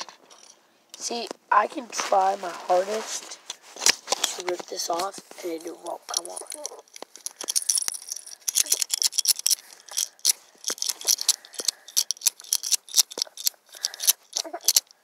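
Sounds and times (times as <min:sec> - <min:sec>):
handcuffs clicking and rattling: 0:00.0 - 0:00.6, 0:03.8 - 0:15.0.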